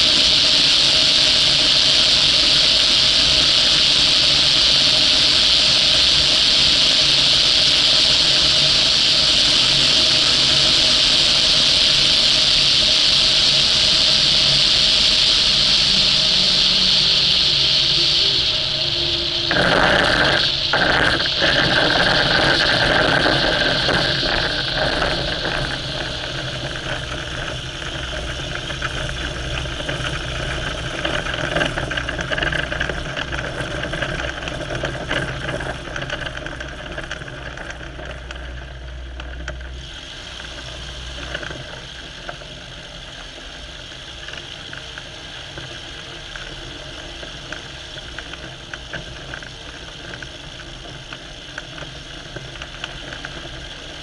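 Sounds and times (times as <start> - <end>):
light aircraft engine: 0.0 - 54.0
low hum: 4.4 - 43.7.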